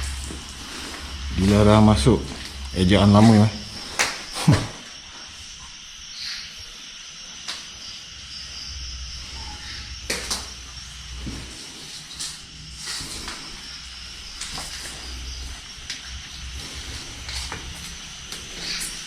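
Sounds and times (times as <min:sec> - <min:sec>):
low rumble: 0:00.0 - 0:04.4, 0:08.2 - 0:18.6
steady high hiss: 0:00.0 - 0:19.0.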